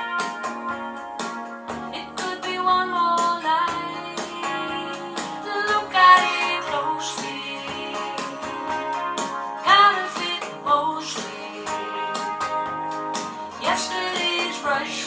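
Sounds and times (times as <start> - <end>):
plucked acoustic guitar: 0.0 - 15.0
woman singing: 1.9 - 9.0, 9.6 - 12.8, 13.4 - 15.0.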